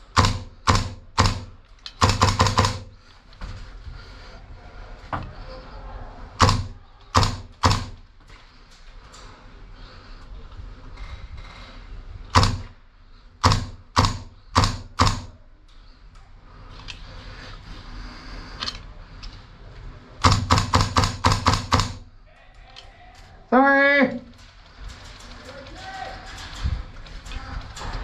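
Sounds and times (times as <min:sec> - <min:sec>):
airsoft gun shots: 0:00.0 - 0:02.9, 0:06.4 - 0:08.0, 0:12.3 - 0:12.8, 0:13.4 - 0:15.4, 0:20.2 - 0:22.1.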